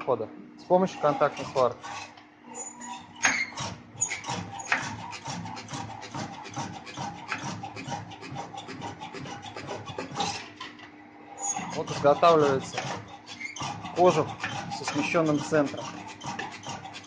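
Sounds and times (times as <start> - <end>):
low steady hum: 0.0 - 4.0.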